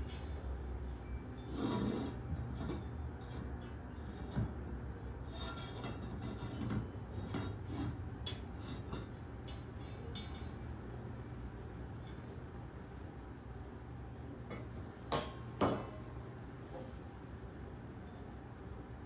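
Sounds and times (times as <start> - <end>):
steady low hum: 0.0 - 19.0
glass apparatus scraping and rubbing: 1.4 - 4.4.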